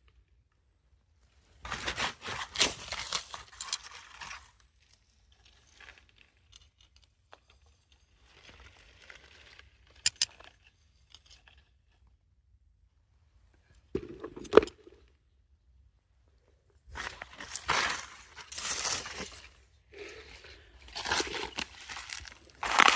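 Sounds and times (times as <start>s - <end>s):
rustling crackling handling noise: 1.3s - 11.5s, 16.8s - 22.9s.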